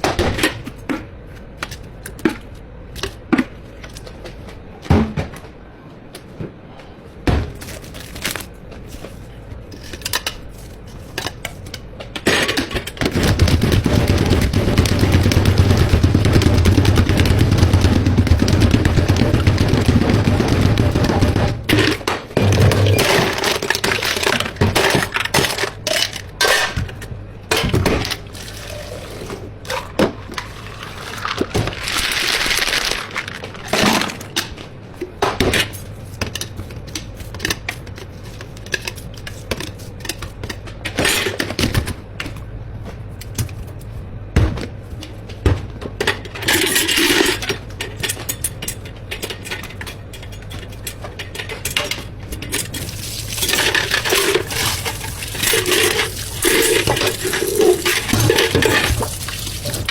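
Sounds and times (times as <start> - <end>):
plastic cups and utensils clattering: 29.7 - 34.5, 51.3 - 59.9.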